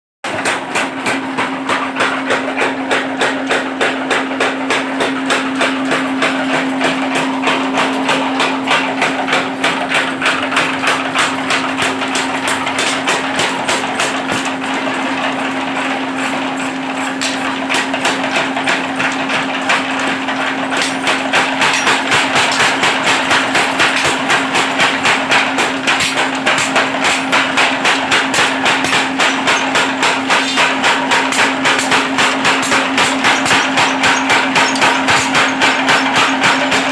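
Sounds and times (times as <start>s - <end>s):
power hammer striking: 0.3s - 36.9s.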